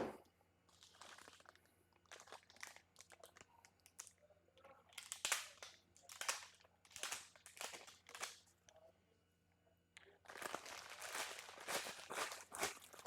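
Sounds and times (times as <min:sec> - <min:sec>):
packaging rustling and crinkling: 0:00.7 - 0:04.1, 0:04.9 - 0:08.4, 0:10.2 - 0:13.0.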